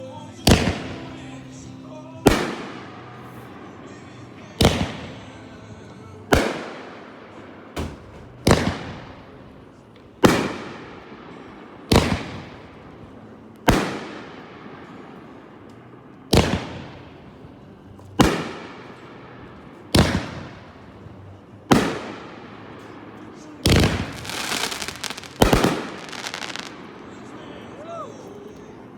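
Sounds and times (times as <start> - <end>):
firework bangs with crackling tail: 0.4 - 1.6, 2.2 - 3.5, 4.4 - 5.5, 6.3 - 13.0, 13.6 - 15.0, 16.3 - 17.0, 18.2 - 19.0, 19.7 - 27.0.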